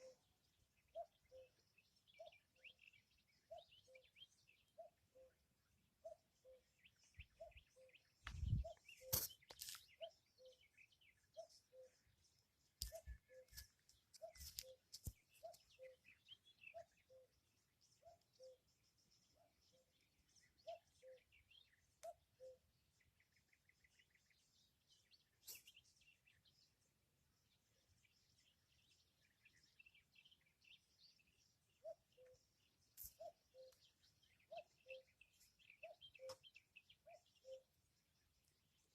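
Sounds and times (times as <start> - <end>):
small birds chirping: 0.0 - 38.9
cuckoo calling: 0.9 - 1.5, 6.0 - 6.6, 7.2 - 10.6, 12.8 - 17.3, 18.0 - 18.6, 20.6 - 21.2, 22.0 - 22.6, 33.0 - 35.1, 35.7 - 37.7.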